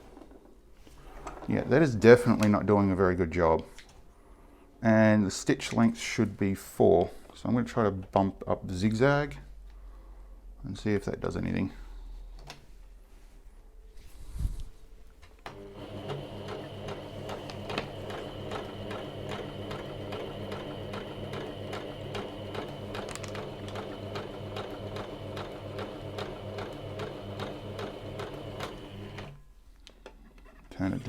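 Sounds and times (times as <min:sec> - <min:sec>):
sewing machine motor whine: 0:15.5 - 0:29.4.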